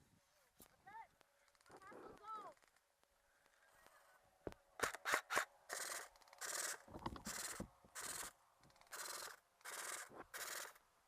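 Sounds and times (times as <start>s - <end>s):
sharp clicks: 1.2s - 3.6s, 4.8s - 10.8s.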